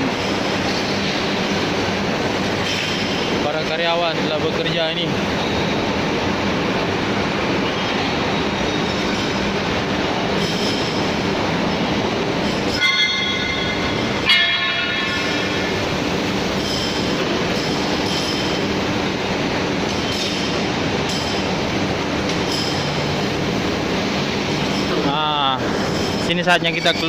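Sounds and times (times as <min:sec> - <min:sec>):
machine-shop machinery din: 0:00.0 - 0:27.0
high metallic rings: 0:10.4 - 0:11.1, 0:11.7 - 0:18.7.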